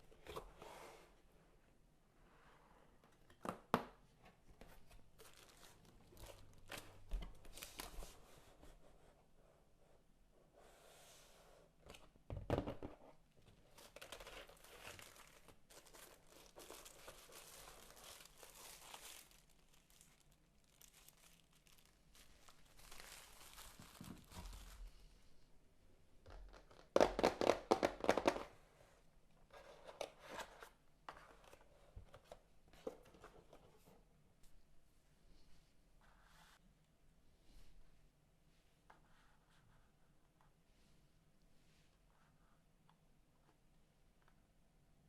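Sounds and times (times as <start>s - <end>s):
cardboard and paper rustling: 4.6s - 8.8s, 13.5s - 25.0s.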